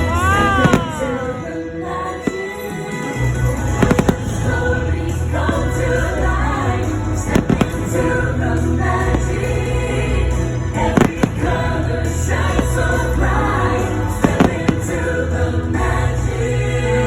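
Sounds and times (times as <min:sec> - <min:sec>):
choral music over loudspeakers: 0:00.0 - 0:17.0
firework bangs: 0:03.7 - 0:04.6, 0:07.3 - 0:08.3, 0:10.8 - 0:13.0, 0:14.1 - 0:15.1.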